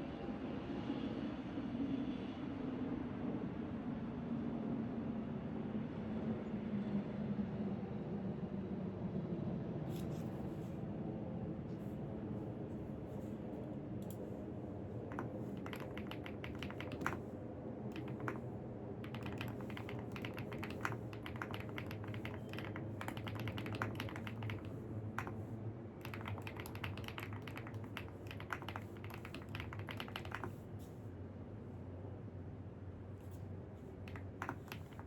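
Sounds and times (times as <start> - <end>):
low background hum: 8.5 - 35.0
keyboard typing: 15.1 - 17.3, 17.9 - 30.6, 34.0 - 35.0.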